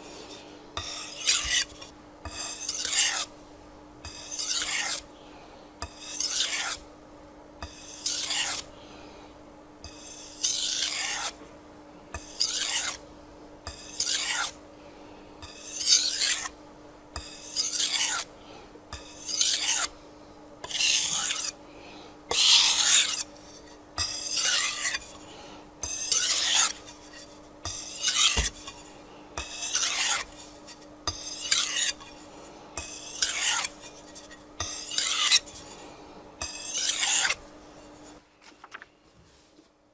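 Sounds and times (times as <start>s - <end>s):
knife rasping on whetstone: 0.8s - 3.3s, 4.0s - 5.1s, 5.8s - 6.8s, 7.6s - 8.7s, 9.8s - 11.4s, 12.1s - 13.0s, 13.6s - 14.6s, 15.4s - 16.6s, 17.2s - 18.3s, 18.9s - 20.0s, 20.6s - 21.6s, 22.3s - 35.8s, 36.4s - 37.4s.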